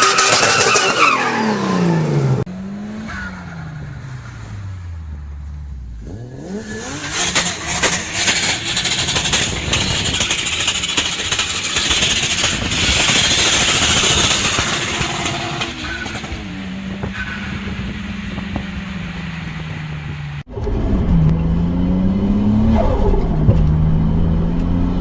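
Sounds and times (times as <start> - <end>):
car engine revving: 0.0 - 25.0
exhaust crackling pops: 5.9 - 18.6.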